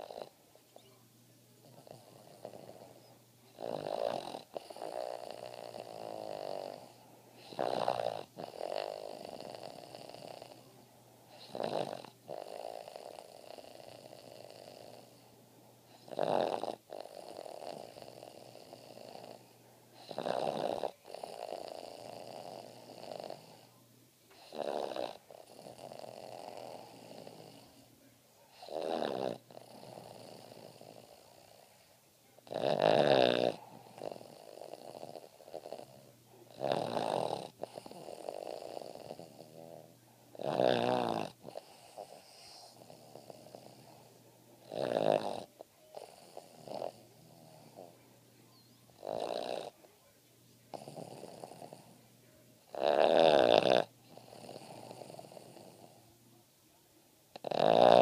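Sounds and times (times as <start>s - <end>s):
dog snoring: 0.0s - 0.9s, 1.6s - 15.3s, 15.9s - 23.7s, 24.3s - 27.9s, 28.5s - 48.0s, 48.6s - 49.8s, 50.7s - 52.0s, 52.6s - 56.1s, 57.3s - 58.0s.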